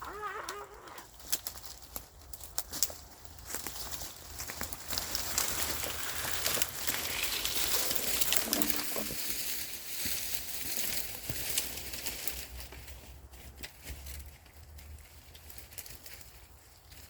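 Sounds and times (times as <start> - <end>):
dry leaves rustling and crackling: 0.0 - 17.0.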